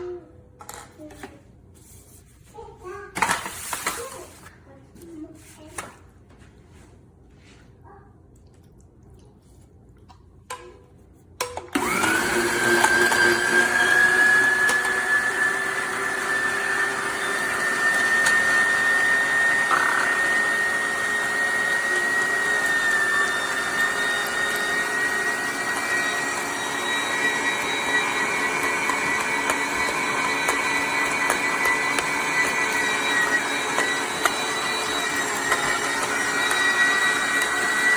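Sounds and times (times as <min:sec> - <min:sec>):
meat grinder motor whining: 0:11.7 - 0:37.9.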